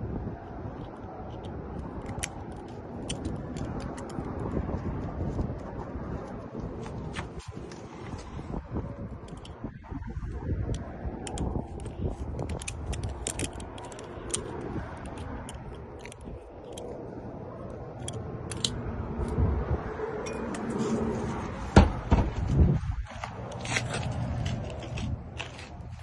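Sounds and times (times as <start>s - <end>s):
lock picks clicking in lock: 0.8s - 4.5s, 10.7s - 17.0s, 18.0s - 18.8s.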